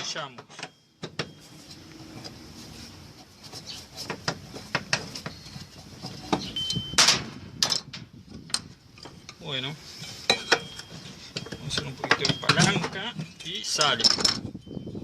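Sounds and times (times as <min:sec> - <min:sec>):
tools clicking and knocking: 0:10.3 - 0:14.4.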